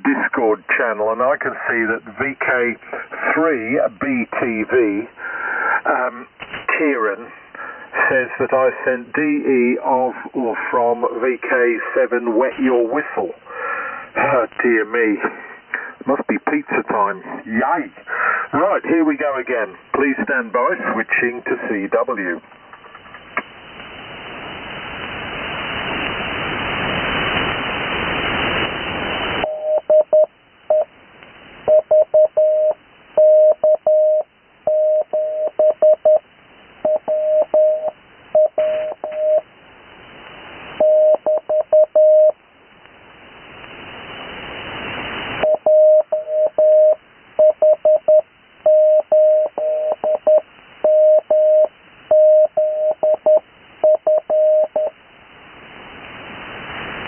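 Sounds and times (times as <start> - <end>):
radio band hiss: 0.0 - 57.0
morse code tone: 29.4 - 30.9, 31.7 - 36.2, 36.9 - 39.4, 40.8 - 42.4, 45.4 - 54.9.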